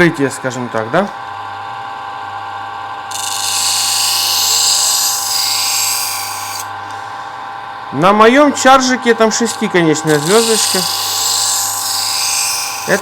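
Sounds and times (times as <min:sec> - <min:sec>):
power tool whining: 0:02.8 - 0:13.0
grinding hiss on knife blade: 0:03.1 - 0:06.7, 0:10.1 - 0:13.0.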